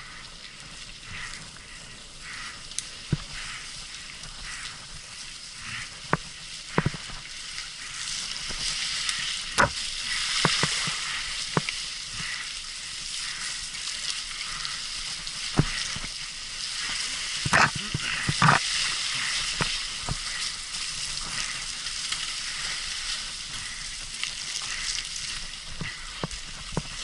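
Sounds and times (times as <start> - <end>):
bike tyres crackling on trail: 0.0 - 27.0
bike knocks and rattles: 9.6 - 9.8.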